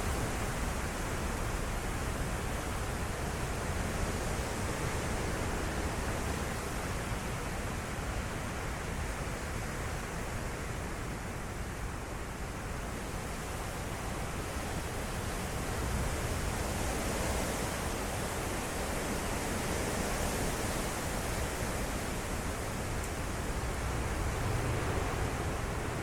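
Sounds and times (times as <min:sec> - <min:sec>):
strong wind gusts: 0:12.6 - 0:26.0.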